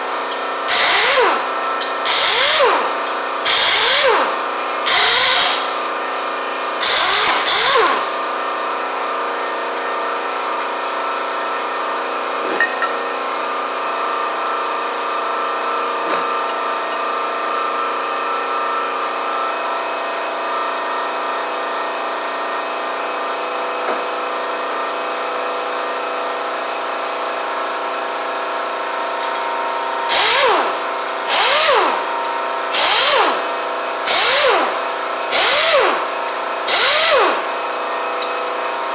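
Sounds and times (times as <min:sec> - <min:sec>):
pneumatic impact wrench: 0:00.0 - 0:08.6, 0:29.0 - 0:38.9.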